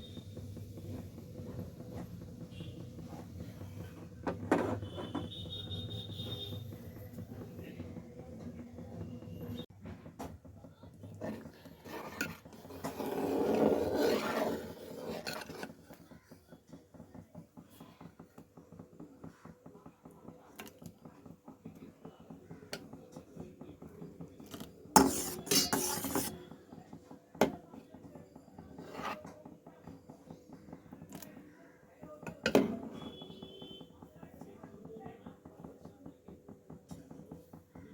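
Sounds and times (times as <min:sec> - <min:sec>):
dishes clinking and scraping: 0:24.4 - 0:26.6.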